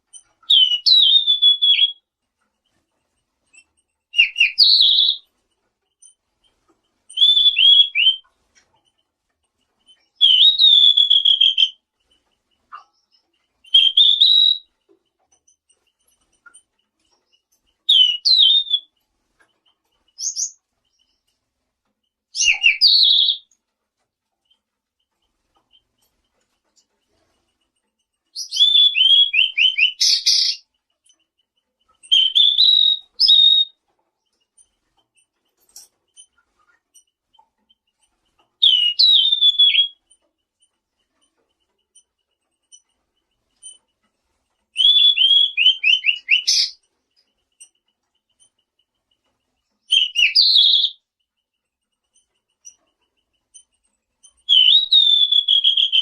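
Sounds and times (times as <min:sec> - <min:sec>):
songbird whistling trills: 0:00.1 - 0:02.1, 0:03.6 - 0:05.3, 0:07.1 - 0:08.3, 0:09.9 - 0:11.8, 0:12.7 - 0:14.7, 0:17.3 - 0:18.9, 0:20.1 - 0:21.2, 0:22.3 - 0:23.5, 0:28.3 - 0:30.6, 0:32.0 - 0:33.8, 0:38.6 - 0:40.0, 0:44.8 - 0:46.8, 0:49.9 - 0:51.0, 0:54.3 - 0:56.0.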